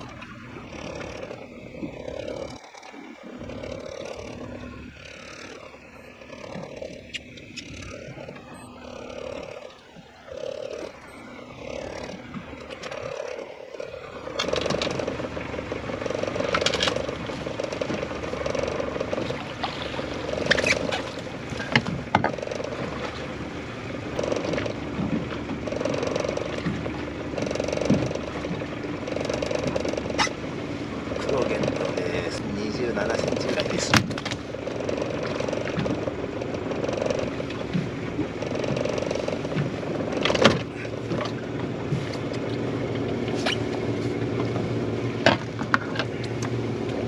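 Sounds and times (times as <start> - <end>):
fishing reel whirring: 0.0 - 19.4.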